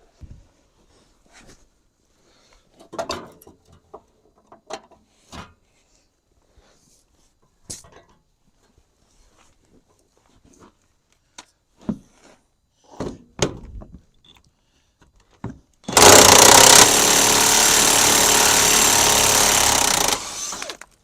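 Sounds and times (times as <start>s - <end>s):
impact wrench running: 15.9s - 20.8s.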